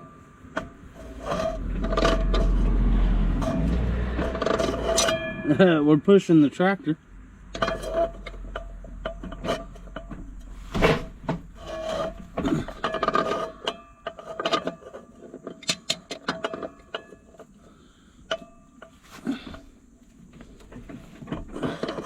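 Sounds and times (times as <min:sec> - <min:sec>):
scraping on metal pulley: 0:00.6 - 0:05.6, 0:07.5 - 0:19.4, 0:20.5 - 0:22.0
hand tool clicks and knocks: 0:12.4 - 0:17.5.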